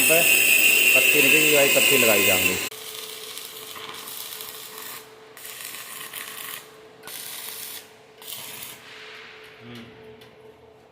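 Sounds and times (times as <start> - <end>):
arc welding crackling hiss: 0.0 - 8.8.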